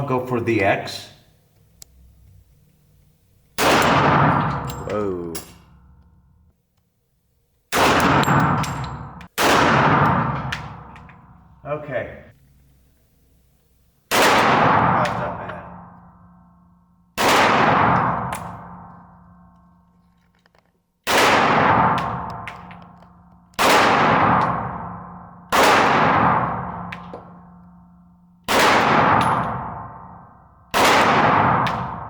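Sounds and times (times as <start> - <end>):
pistol shots with ringing: 3.6 - 6.0, 7.7 - 11.5, 14.1 - 19.8, 21.0 - 32.0.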